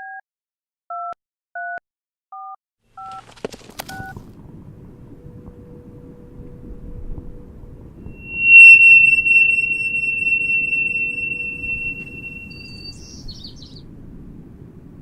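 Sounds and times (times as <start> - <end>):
loud high ringing tone: 5.2 - 13.0
quick chirps: 8.2 - 13.1.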